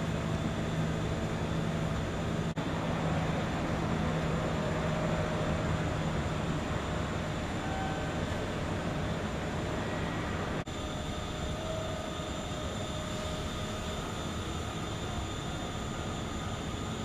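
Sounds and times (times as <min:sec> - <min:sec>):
electric train rumbling: 0:00.0 - 0:17.0.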